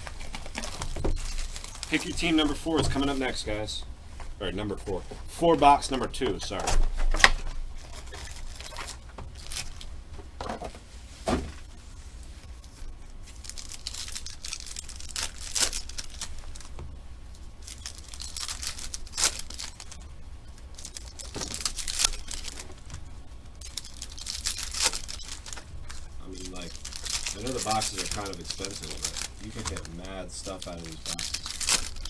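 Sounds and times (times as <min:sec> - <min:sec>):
plastic wrap tearing and crinkling: 0:00.0 - 0:03.6, 0:07.0 - 0:09.9, 0:13.1 - 0:16.8, 0:17.4 - 0:32.0.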